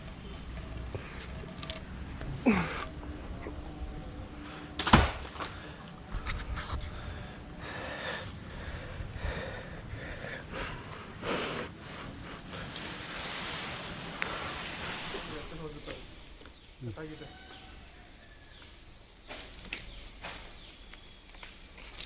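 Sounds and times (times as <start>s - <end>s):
rustling: 0.0s - 3.2s, 12.0s - 16.8s.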